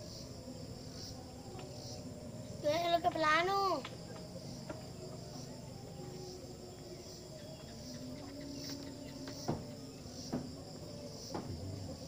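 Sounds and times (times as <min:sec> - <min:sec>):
insect chirping: 0:00.0 - 0:12.0.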